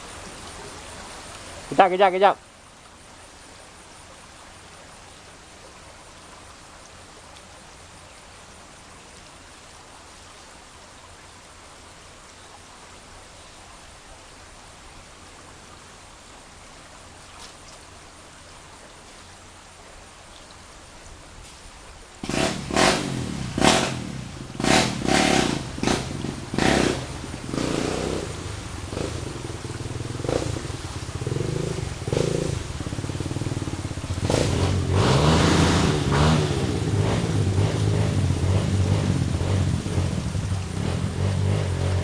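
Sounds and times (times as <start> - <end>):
dirt bike engine revving: 22.2 - 42.0.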